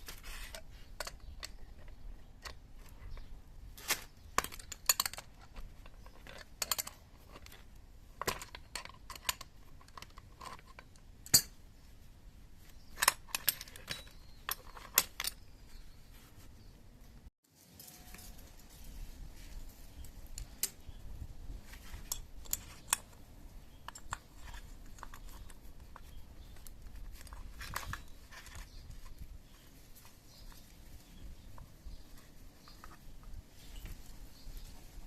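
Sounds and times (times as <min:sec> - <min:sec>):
metal tools clinking: 0:04.4 - 0:11.6, 0:12.8 - 0:15.9.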